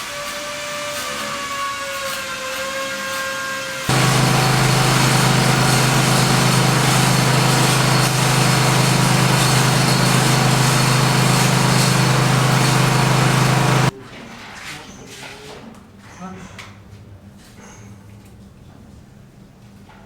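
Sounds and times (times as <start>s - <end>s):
small engine running steadily: 3.9s - 13.9s.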